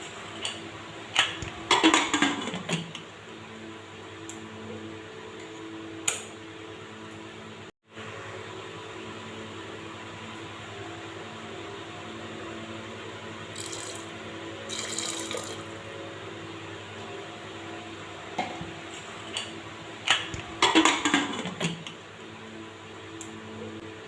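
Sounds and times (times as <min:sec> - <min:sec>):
water splashing in a pot: 0:14.7 - 0:15.8.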